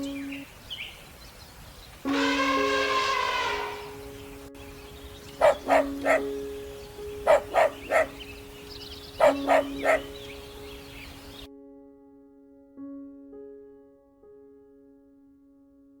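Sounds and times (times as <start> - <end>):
dog barking: 5.3 - 6.5, 7.2 - 8.4, 9.2 - 10.5.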